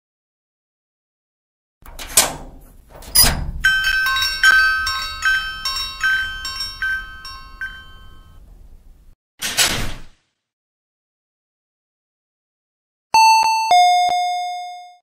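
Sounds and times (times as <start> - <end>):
clattering knocks: 1.8 - 8.6
small metal bell ringing: 3.6 - 8.5.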